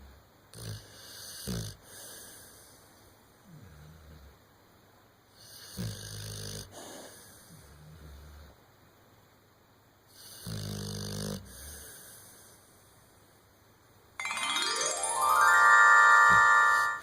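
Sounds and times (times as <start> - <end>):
pet snoring: 0.5 - 2.3, 5.4 - 8.6, 10.1 - 12.5.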